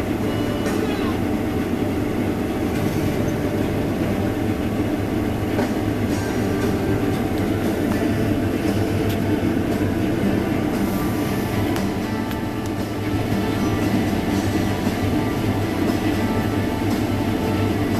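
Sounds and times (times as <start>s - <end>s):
combine harvester drone: 0.0s - 17.9s.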